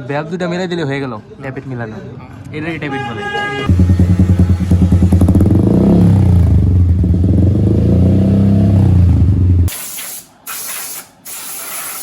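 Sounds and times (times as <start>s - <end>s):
motorcycle engine revving: 3.7s - 9.7s
spray hissing in bursts: 9.7s - 12.0s.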